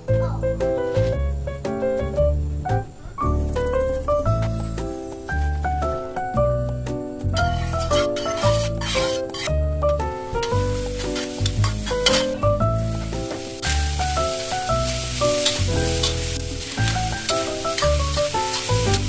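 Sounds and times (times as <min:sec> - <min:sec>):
food sizzling in pan: 0:07.3 - 0:19.0.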